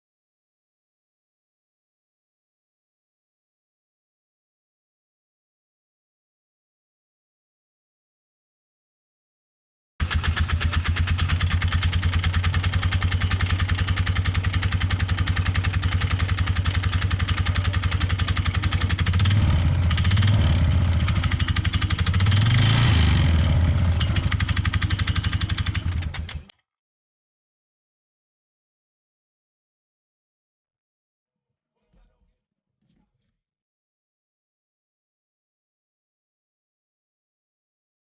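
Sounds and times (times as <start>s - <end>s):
engine idling and revving: 10.0s - 26.5s.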